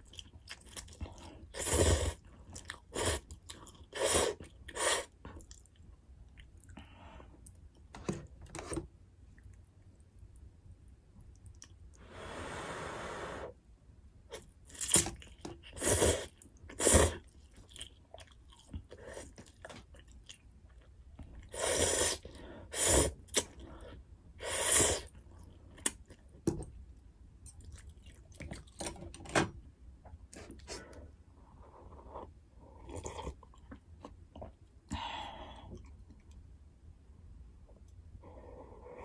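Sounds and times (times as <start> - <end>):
chewing: 0.0 - 6.8, 14.8 - 21.5.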